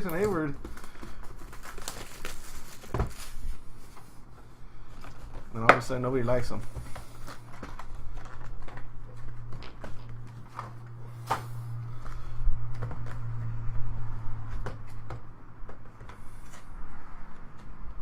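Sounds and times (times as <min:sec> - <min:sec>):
cardboard packaging handled: 0:00.0 - 0:13.7
low steady hum: 0:00.0 - 0:18.0.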